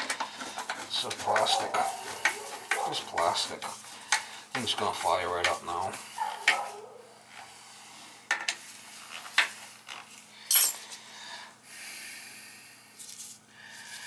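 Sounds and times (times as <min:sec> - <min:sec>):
metallic clinks of tools: 0:10.5 - 0:10.8.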